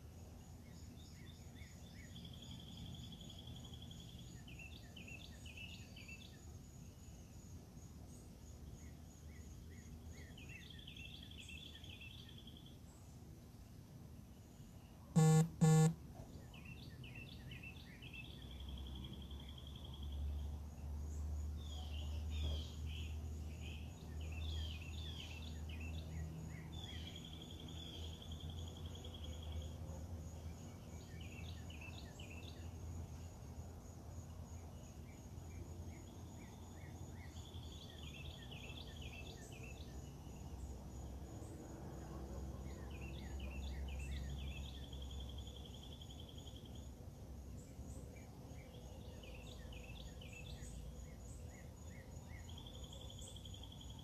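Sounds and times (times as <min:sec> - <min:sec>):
songbird singing: 0:00.0 - 0:13.4, 0:14.0 - 0:54.0
short loud beeps: 0:15.2 - 0:16.0.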